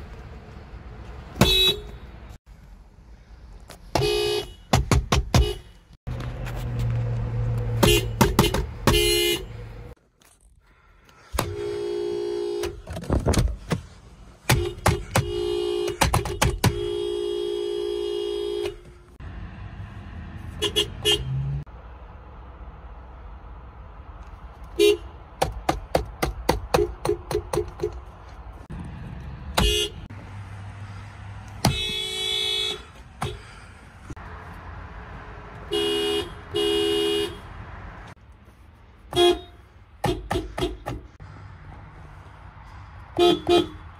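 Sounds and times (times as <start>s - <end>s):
car horn honking: 1.3s - 2.3s, 3.9s - 5.9s, 7.7s - 9.8s, 11.4s - 12.9s, 14.5s - 19.0s, 20.6s - 21.6s, 24.8s - 25.2s, 29.5s - 30.1s, 31.6s - 33.6s, 35.6s - 37.6s, 39.1s - 41.0s, 43.2s - 43.9s.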